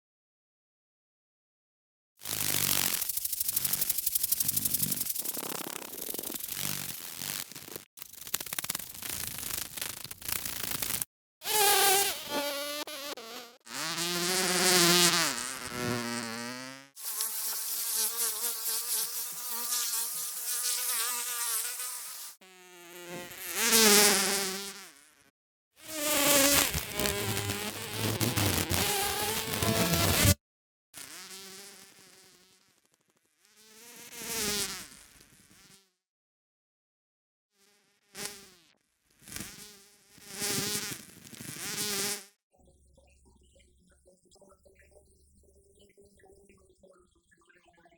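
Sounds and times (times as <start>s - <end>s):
flies and bees buzzing: 2.3s - 7.8s, 8.4s - 25.3s, 25.9s - 30.4s.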